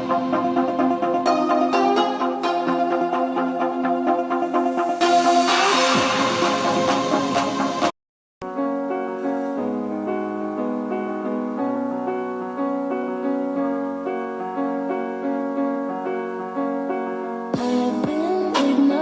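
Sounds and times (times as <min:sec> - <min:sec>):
electronic dance track: 0:00.0 - 0:07.9, 0:17.6 - 0:19.0
keyboard playing repeated chords: 0:00.0 - 0:19.0.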